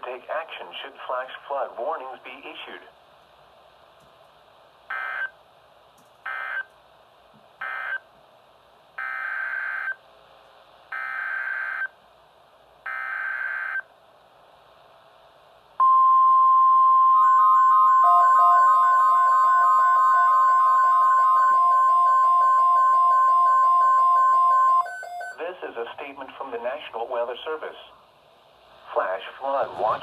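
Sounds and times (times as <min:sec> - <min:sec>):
alternating pitch beeps: 0:15.8 - 0:25.4
steady alert tone: 0:15.8 - 0:25.4.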